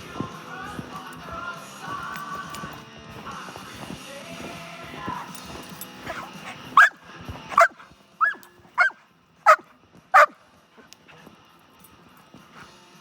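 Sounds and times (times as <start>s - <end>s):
dog barking: 6.0s - 10.4s.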